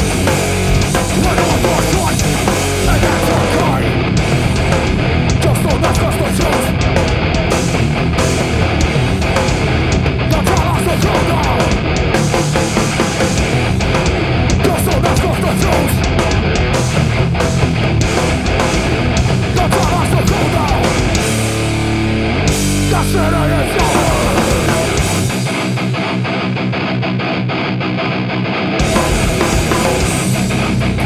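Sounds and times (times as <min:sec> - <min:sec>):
heavy distorted live band music: 0:00.0 - 0:31.0.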